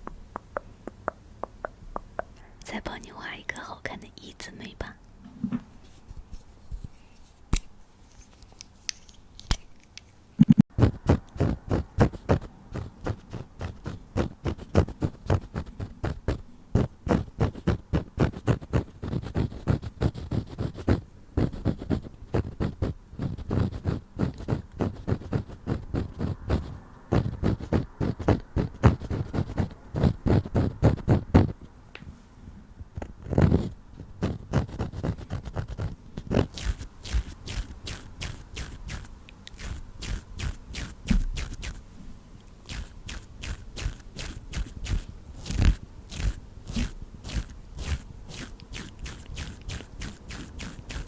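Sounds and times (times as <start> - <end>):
pencil scratching strokes: 10.8 - 31.6, 33.2 - 41.8, 42.6 - 51.0.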